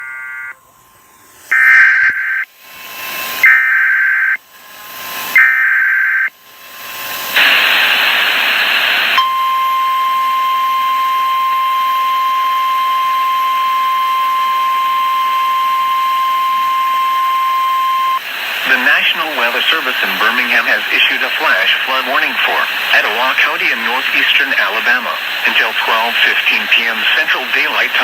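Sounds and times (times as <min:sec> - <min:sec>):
loud static: 0:00.0 - 0:28.0
steady single-pitch alert tone: 0:01.5 - 0:02.4, 0:09.2 - 0:18.2
warbling data tones: 0:01.5 - 0:02.5.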